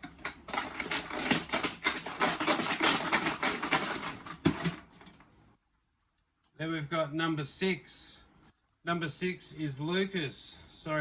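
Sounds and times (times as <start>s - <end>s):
small tokens rattling in container: 0.5s - 4.8s.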